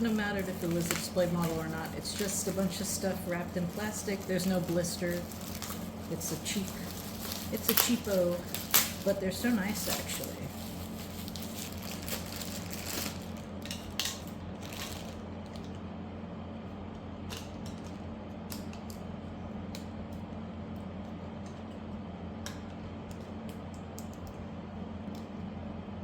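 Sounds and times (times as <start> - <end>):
plastic wrapping crinkling: 0.0 - 15.7
steady low hum: 0.0 - 26.0.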